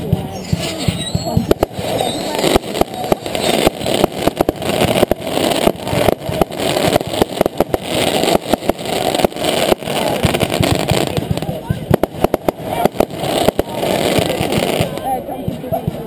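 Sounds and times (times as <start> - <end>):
rushing crackling noise: 0.0 - 15.7
fireworks bangs and cracks: 0.0 - 16.0.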